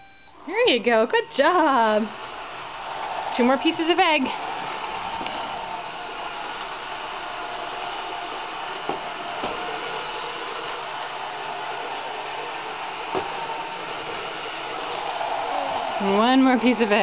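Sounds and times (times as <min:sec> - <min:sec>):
faint held tone: 0:00.0 - 0:00.4
robot vacuum whirring: 0:00.4 - 0:17.0.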